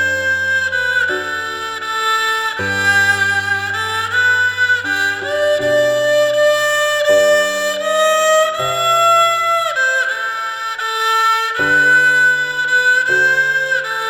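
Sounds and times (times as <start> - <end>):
low sustained accompaniment: 0.0 - 9.8
violin-like melody: 0.0 - 14.0.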